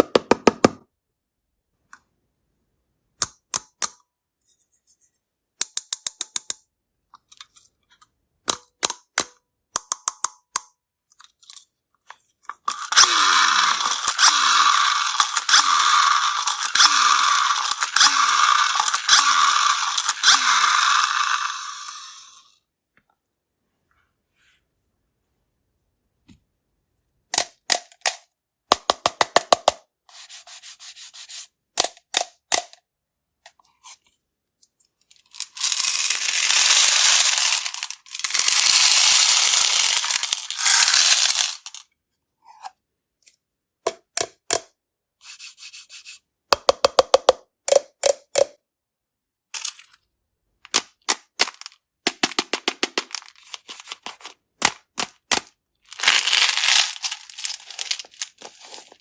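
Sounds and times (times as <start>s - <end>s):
candy pouring: 12.6s - 22.5s, 35.1s - 41.8s, 55.8s - 59.0s
candies clattering in plastic tub: 35.1s - 41.9s, 49.6s - 59.0s.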